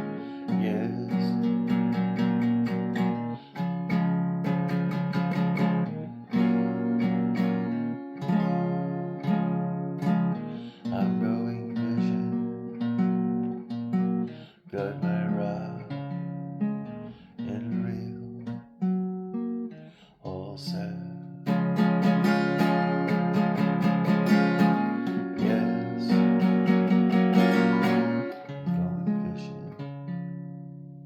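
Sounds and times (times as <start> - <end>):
acoustic guitar strumming chords: 0.0 - 31.0.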